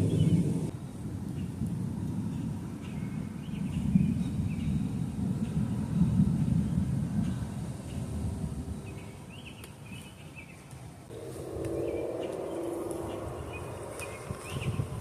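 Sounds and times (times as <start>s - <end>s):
birds chirping: 0.0s - 0.7s, 8.8s - 15.0s
low rumble: 11.1s - 15.0s.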